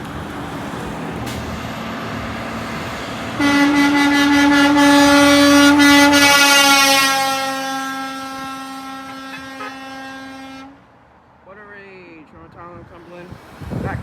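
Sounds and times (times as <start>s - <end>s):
truck engine passing: 0.0s - 11.8s
road noise: 0.0s - 14.0s
truck air horn blast: 3.3s - 10.9s.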